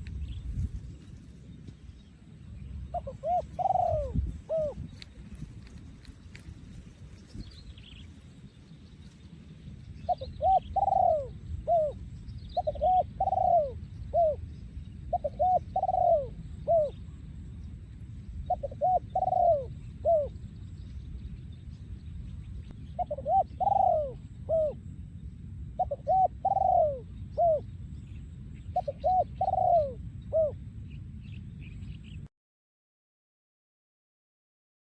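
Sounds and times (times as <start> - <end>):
dove cooing: 2.9 - 5.5, 10.1 - 12.0, 12.6 - 14.4, 15.1 - 17.2, 18.5 - 20.4, 23.0 - 24.9, 25.8 - 27.7, 28.8 - 30.6.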